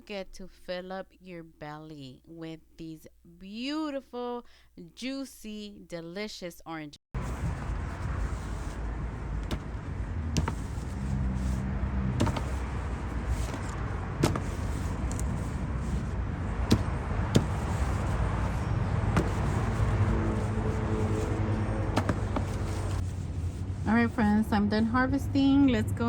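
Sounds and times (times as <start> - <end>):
low rumble of road traffic: 7.2 - 26.0.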